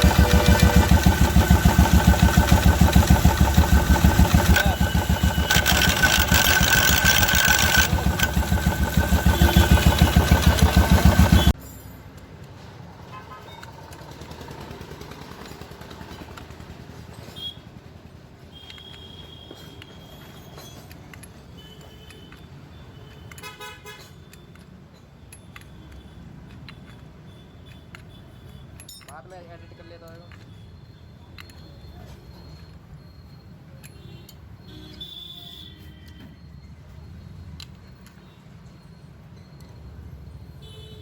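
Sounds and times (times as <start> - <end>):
clattering clutch gear: 0.0 - 11.6
motorcycle engine idling: 0.0 - 11.6
vehicle horn honking: 9.1 - 11.6.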